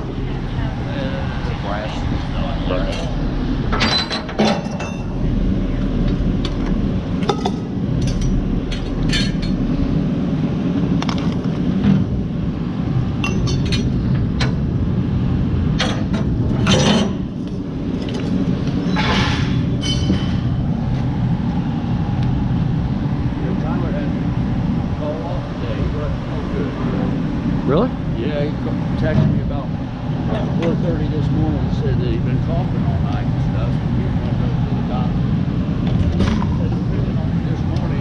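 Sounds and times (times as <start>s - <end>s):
steady low rumble: 0.0s - 38.0s
scrap metal clinking and clanking: 3.7s - 5.2s, 7.2s - 9.6s, 15.8s - 20.6s.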